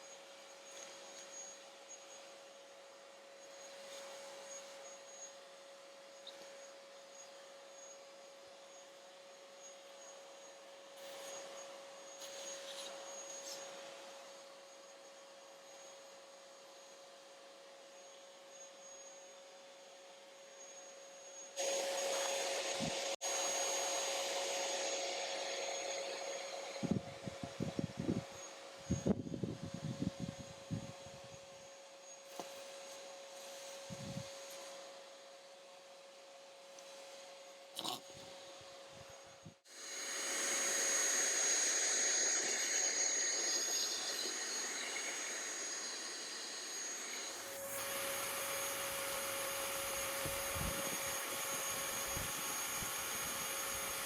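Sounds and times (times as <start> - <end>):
vacuum cleaner running: 0.0 - 54.0
vacuum cleaner whooshing: 21.6 - 29.3, 39.6 - 54.0.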